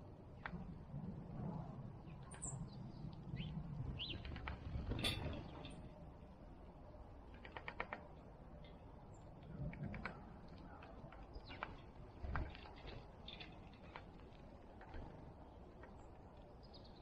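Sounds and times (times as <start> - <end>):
small birds chirping: 2.1 - 4.4, 11.1 - 13.9, 15.4 - 17.0.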